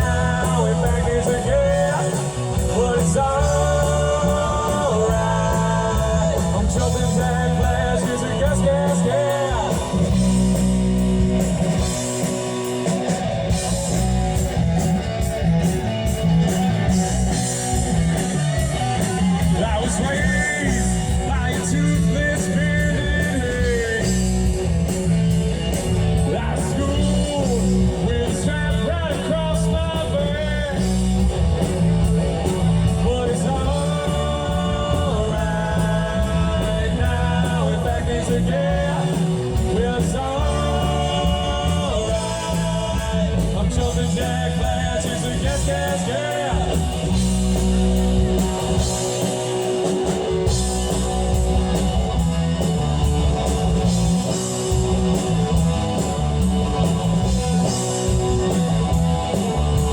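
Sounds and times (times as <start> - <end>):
person singing: 0.0 - 10.4, 32.4 - 49.2
live rock band: 0.0 - 59.9.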